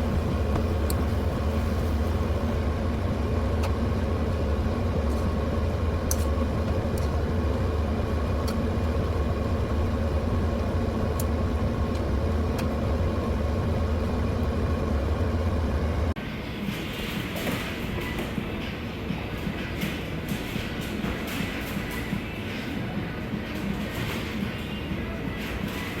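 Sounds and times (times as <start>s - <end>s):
car interior rumble: 0.0s - 16.2s.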